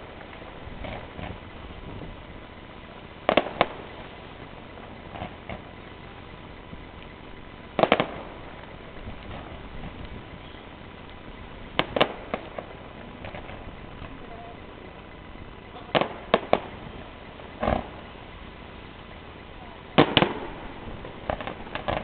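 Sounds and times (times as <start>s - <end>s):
fireworks bangs: 0.0s - 22.0s
faint firework pops: 0.3s - 1.4s, 3.3s - 4.0s, 5.0s - 5.8s, 7.8s - 14.2s, 15.7s - 16.8s, 20.0s - 22.0s.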